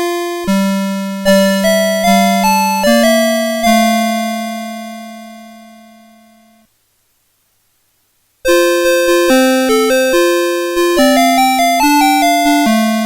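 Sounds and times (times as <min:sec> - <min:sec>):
electronic alarm clock melody: 0:00.0 - 0:06.6, 0:08.5 - 0:13.0.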